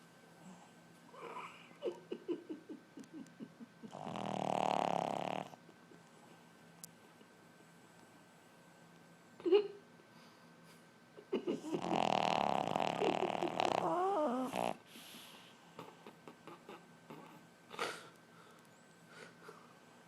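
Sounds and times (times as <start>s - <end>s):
pet snoring loudly: 3.9s - 5.6s, 11.8s - 14.8s
faint breath: 14.8s - 15.8s, 17.7s - 20.0s.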